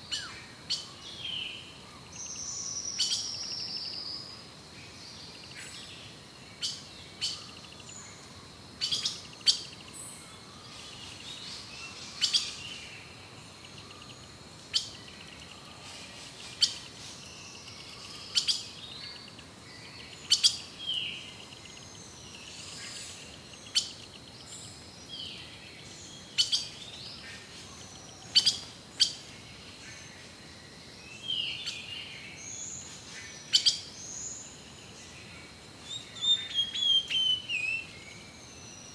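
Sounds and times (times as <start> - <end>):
soft bird chirps and whistles: 35.9 - 38.9.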